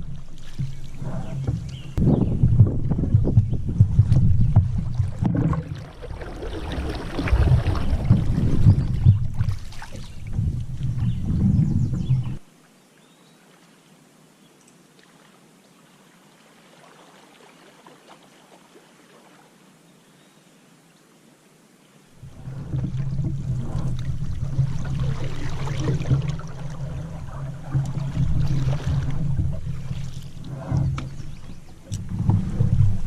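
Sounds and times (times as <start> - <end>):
paddle rushing through water: 0.0 - 12.5, 22.2 - 33.0
water trickling: 0.0 - 12.5, 22.2 - 33.0.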